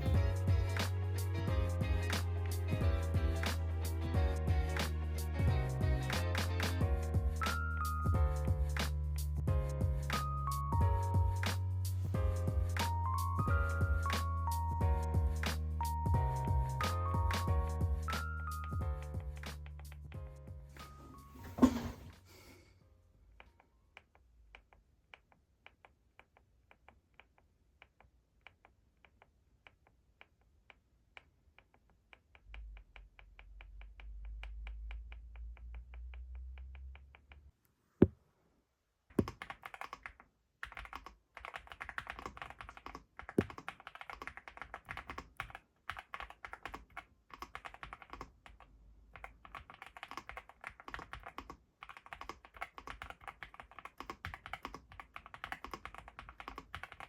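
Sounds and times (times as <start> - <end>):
mechanical keyboard typing: 39.2 - 57.0.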